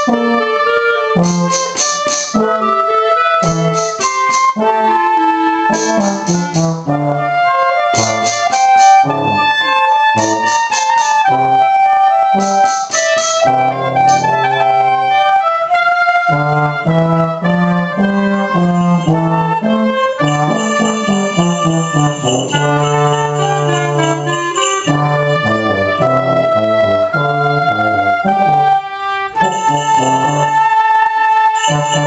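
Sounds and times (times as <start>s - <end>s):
euphonium: 0.0s - 32.0s
keyboard accompaniment: 0.0s - 32.0s
oboe: 0.0s - 32.0s
quick percussion taps: 1.2s - 2.4s, 3.4s - 4.6s, 5.7s - 6.9s, 8.0s - 9.1s, 10.2s - 11.3s, 12.4s - 14.4s.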